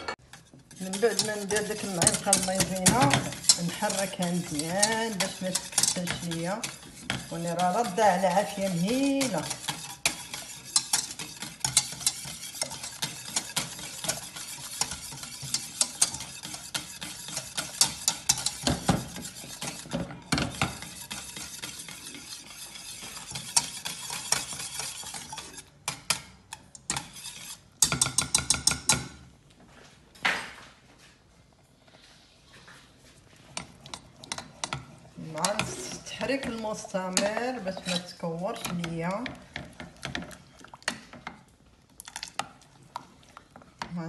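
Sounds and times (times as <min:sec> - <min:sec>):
spoon scraping a saucepan: 0:00.0 - 0:29.1, 0:33.4 - 0:41.5.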